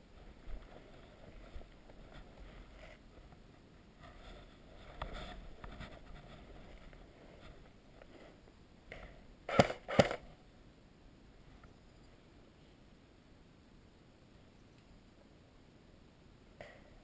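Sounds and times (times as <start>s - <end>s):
faint rustling: 0.0s - 9.3s
sharp pops: 8.9s - 10.2s.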